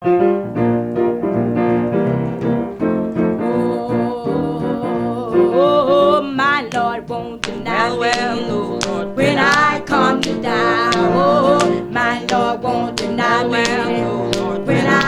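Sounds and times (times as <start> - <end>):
piano chords: 0.0 - 15.0
person singing wordless notes: 3.3 - 15.0.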